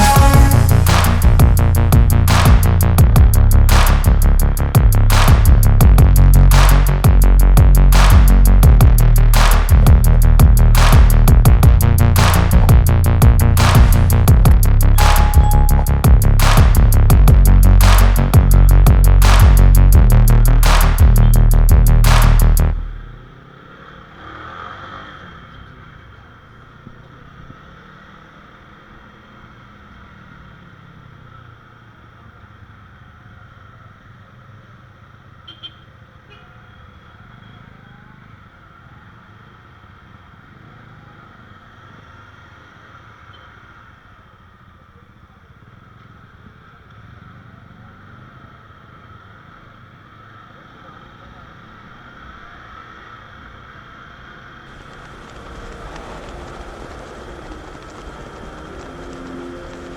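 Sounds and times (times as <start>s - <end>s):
motorcycle engine running: 0.0s - 23.1s, 54.7s - 59.9s
road and wind noise: 21.2s - 59.9s
motorcycle engine: 54.7s - 59.9s
wind noise on microphone: 54.7s - 59.9s.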